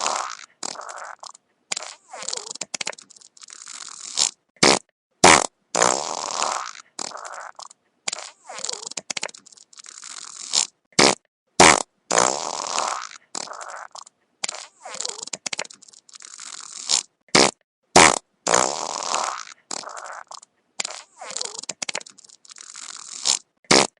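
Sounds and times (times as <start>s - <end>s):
wet fart sound effect: 0.0s - 24.0s.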